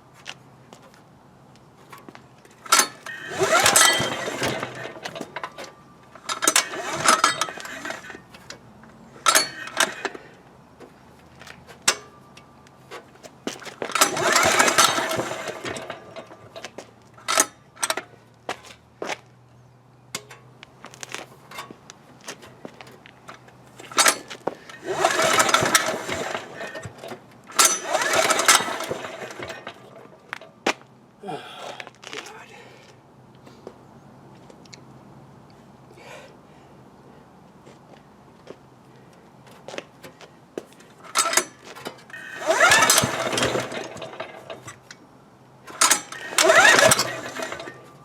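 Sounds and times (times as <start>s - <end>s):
generator recoil starter pulls: 1.9s - 18.8s, 20.2s - 30.7s, 40.8s - 48.0s
engine turning over: 2.6s - 8.6s, 9.2s - 10.3s, 13.5s - 18.1s, 23.7s - 30.5s, 40.9s - 48.0s.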